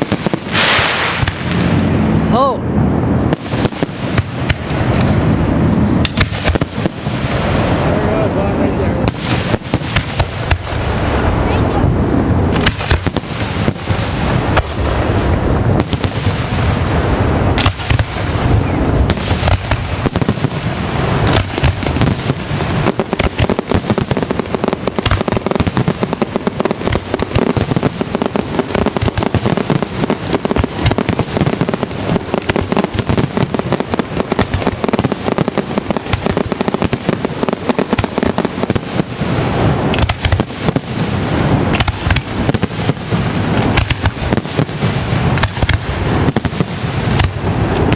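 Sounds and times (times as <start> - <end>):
fireworks bangs and cracks: 0.0 - 47.9.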